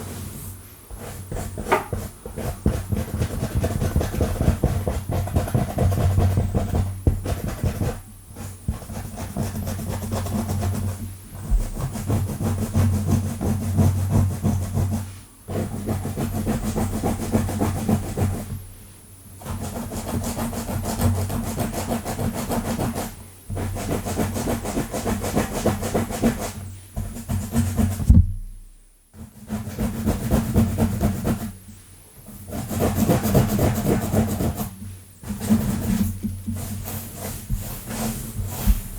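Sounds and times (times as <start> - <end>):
fingernails scratching scalp: 32.4 - 38.9.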